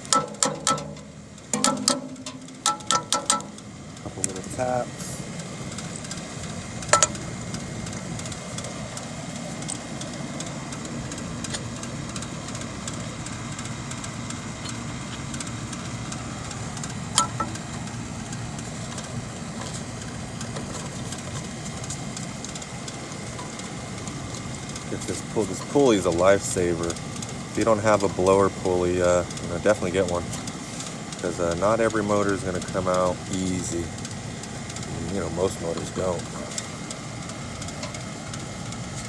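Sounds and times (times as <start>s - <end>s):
hammer tapping metal pulley: 0.0s - 3.6s, 17.2s - 17.6s
steady mechanical hum: 0.0s - 39.0s.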